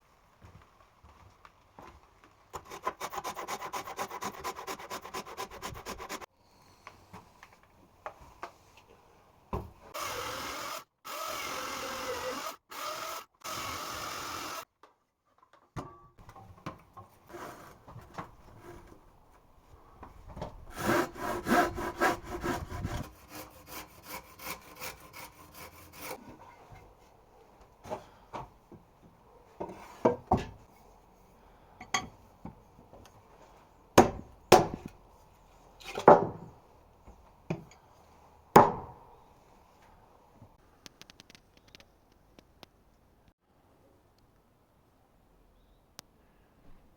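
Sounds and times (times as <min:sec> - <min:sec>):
saw cutting through timber: 0:02.6 - 0:06.3, 0:10.0 - 0:14.6, 0:17.3 - 0:19.0, 0:20.7 - 0:26.2.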